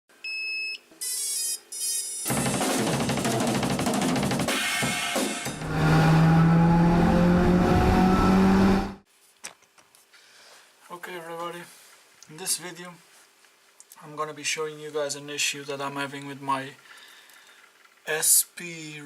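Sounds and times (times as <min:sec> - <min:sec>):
drums and cymbals: 0:02.3 - 0:05.7.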